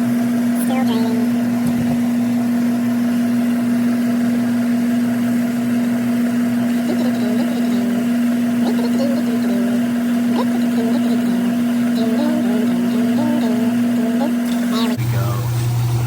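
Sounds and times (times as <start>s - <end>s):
dishwasher humming: 0.0s - 16.0s.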